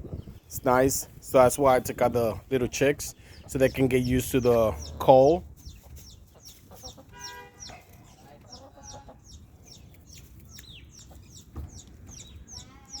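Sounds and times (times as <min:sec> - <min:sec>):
chicks peeping: 0:01.4 - 0:13.0
chicken clucking: 0:05.6 - 0:13.0.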